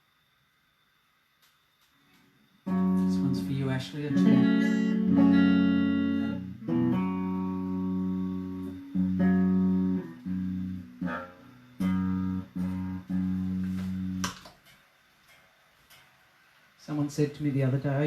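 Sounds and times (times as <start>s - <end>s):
guitar chords strummed: 2.7s - 14.4s.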